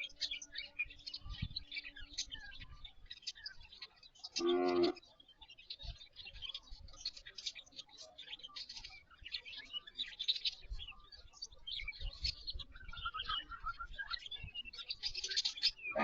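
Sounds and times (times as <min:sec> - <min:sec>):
bird singing high chirps: 0:00.0 - 0:16.0
lower bird notes: 0:04.2 - 0:05.1.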